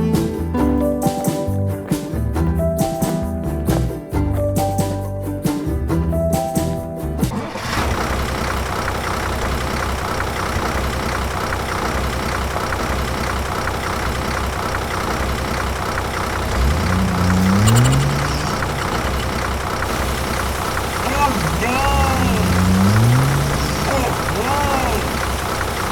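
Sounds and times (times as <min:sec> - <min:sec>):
small tractor motor running: 0:07.3 - 0:25.9.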